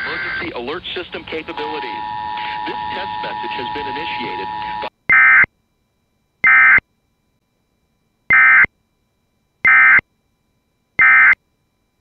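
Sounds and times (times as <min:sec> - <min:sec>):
harsh buzzy data bursts: 0:01.4 - 0:05.5, 0:06.4 - 0:06.8, 0:08.3 - 0:08.7, 0:09.6 - 0:10.0, 0:11.0 - 0:11.4.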